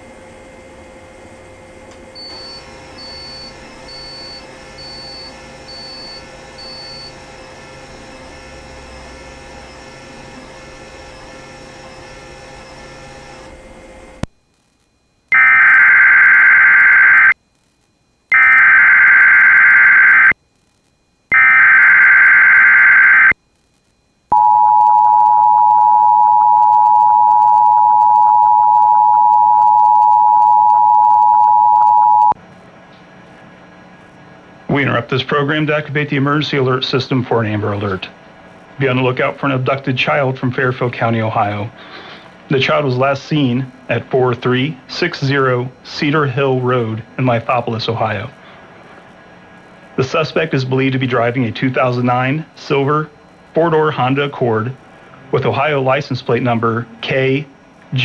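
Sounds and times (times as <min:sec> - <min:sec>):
beeps: 0:02.2 - 0:07.2, 0:15.3 - 0:17.4, 0:18.3 - 0:20.4, 0:21.3 - 0:23.4, 0:24.3 - 0:32.4
two-tone attention signal: 0:02.2 - 0:07.2, 0:24.3 - 0:32.4.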